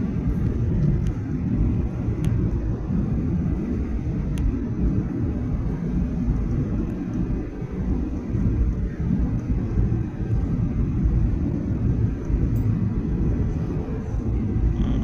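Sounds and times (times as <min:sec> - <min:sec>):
airliner cabin engine rumble: 0:00.0 - 0:15.0.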